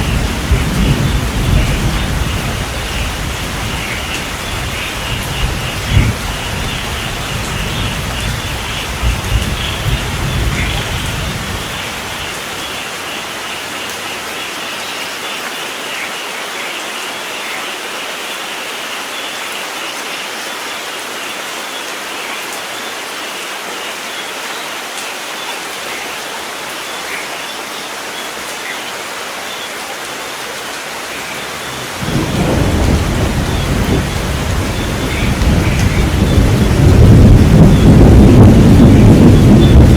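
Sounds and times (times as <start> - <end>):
thunder rumbling: 0.0 - 14.3, 31.1 - 39.9
steady rain falling: 0.0 - 39.9.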